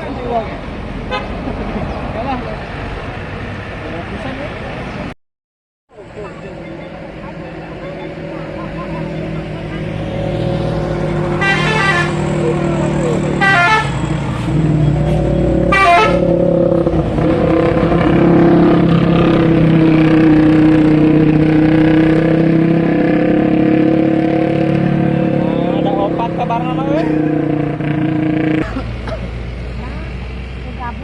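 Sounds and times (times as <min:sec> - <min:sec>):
bus musical horn chord: 0:11.4 - 0:12.3, 0:13.4 - 0:14.0, 0:15.7 - 0:16.3.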